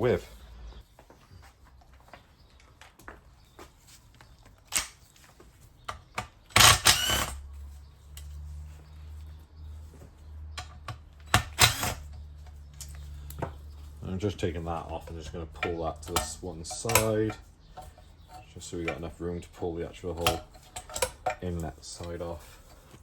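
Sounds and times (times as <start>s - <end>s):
hand tools clicking on metal: 14.3s - 23.0s
metallic clatter: 20.2s - 22.8s.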